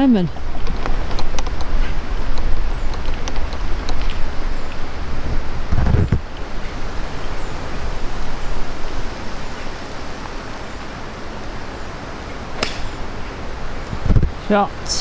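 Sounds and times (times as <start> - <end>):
golf club striking ball: 10.1 - 14.0.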